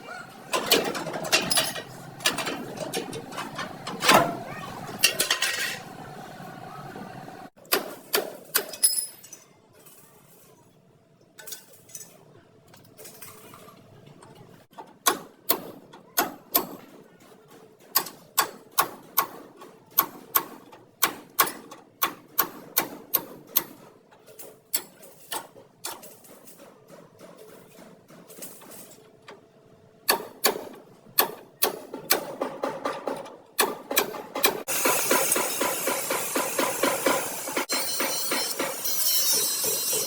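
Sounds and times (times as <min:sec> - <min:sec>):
hammer striking sheet metal: 0:33.6 - 0:40.0.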